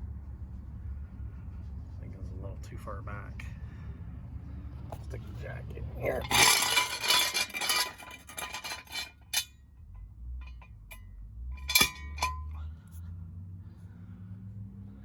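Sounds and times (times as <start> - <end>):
metal floor jack clattering: 6.2 - 9.5, 11.6 - 12.6
sharp metallic clank: 6.2 - 9.5, 10.4 - 12.7.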